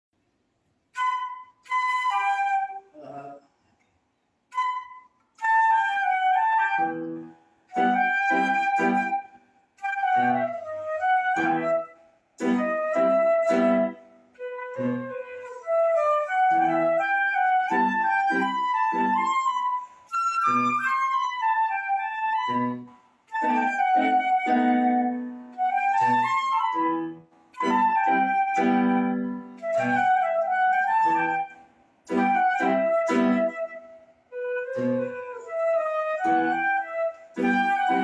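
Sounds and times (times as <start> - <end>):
flute melody: 0.9 - 3.4, 4.5 - 38.0.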